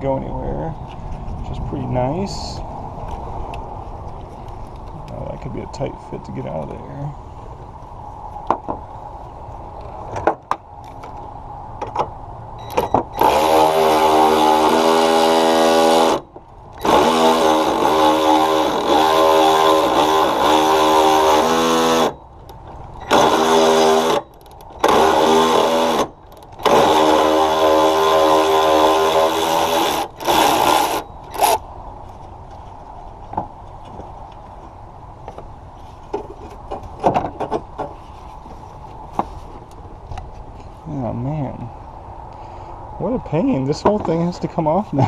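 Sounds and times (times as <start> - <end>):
cordless power tool motor running: 13.1 - 16.2, 16.8 - 22.2, 23.0 - 24.2, 24.8 - 31.6.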